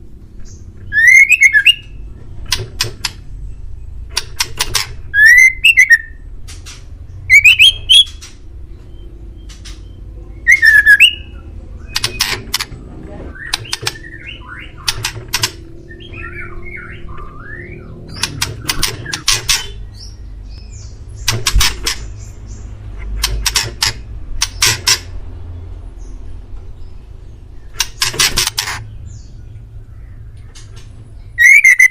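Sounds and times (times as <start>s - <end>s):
sharp bird clicking calls: 0.4s - 3.3s, 4.1s - 12.8s, 13.4s - 25.2s, 27.6s - 31.9s
bird singing whistled notes: 0.5s - 2.0s, 5.1s - 6.2s, 7.3s - 8.2s, 8.9s - 12.2s, 15.9s - 19.2s, 31.2s - 31.9s.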